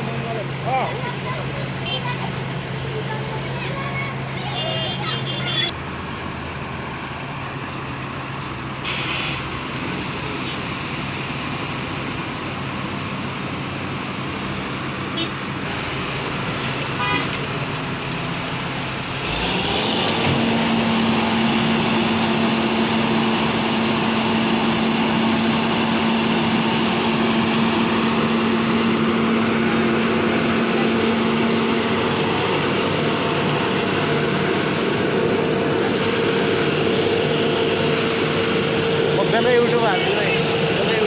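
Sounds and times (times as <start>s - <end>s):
heavy engine running: 0.0s - 41.0s.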